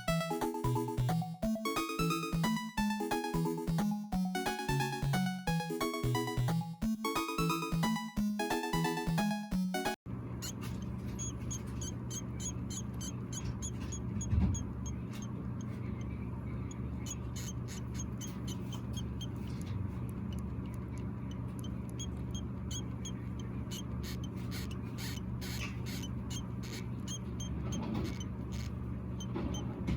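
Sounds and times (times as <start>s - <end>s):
steady low hum: 10.1s - 29.9s
hamster pups squeaking: 10.4s - 29.9s.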